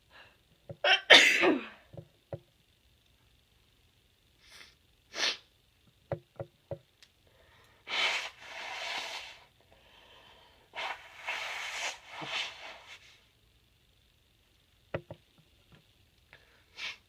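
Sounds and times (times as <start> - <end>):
person sniffing: 4.4 - 5.4, 7.9 - 13.0, 16.7 - 17.0
forceful nasal exhales: 7.9 - 9.4.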